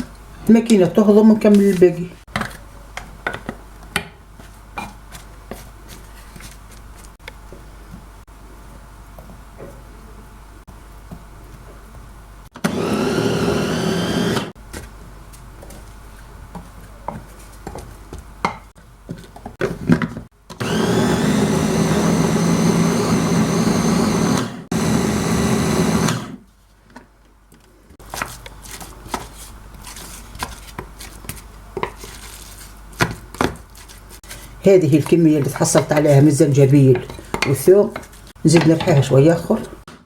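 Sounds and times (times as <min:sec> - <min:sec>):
food processor grinding: 0:12.6 - 0:14.6, 0:20.6 - 0:26.4.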